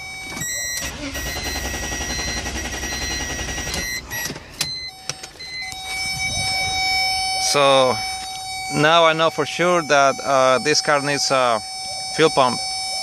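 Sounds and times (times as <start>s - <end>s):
car engine cranking on starter: 0.4s - 5.7s.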